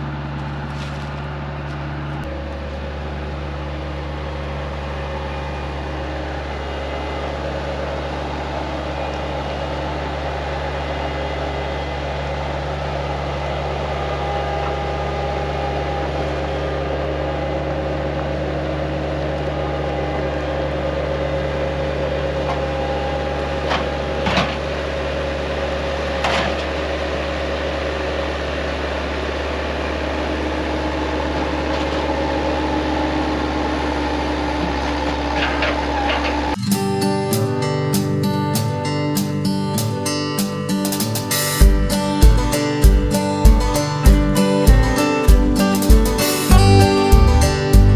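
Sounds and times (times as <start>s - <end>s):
machine humming: 44.7s - 47.9s.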